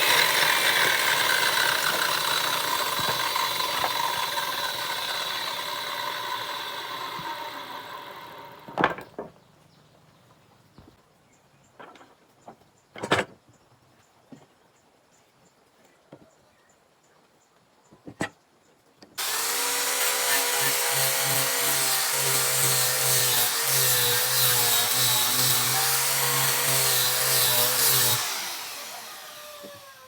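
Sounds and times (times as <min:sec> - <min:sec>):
power tool winding down: 0:00.0 - 0:08.8, 0:19.2 - 0:30.0.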